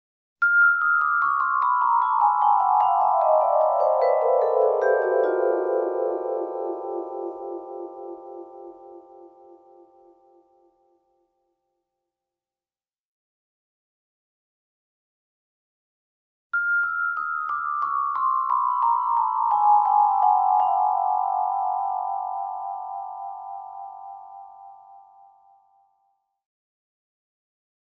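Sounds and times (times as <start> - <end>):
vibraphone descending run: 0.5 - 9.6, 16.7 - 23.4.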